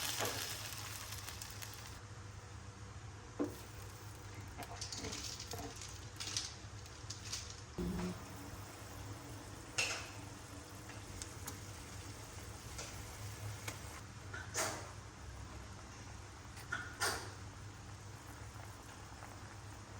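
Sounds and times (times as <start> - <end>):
steady low hum: 7.7 - 14.3.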